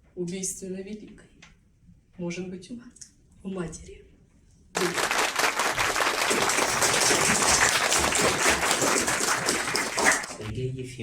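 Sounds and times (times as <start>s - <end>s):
audience applauding: 4.8s - 10.5s.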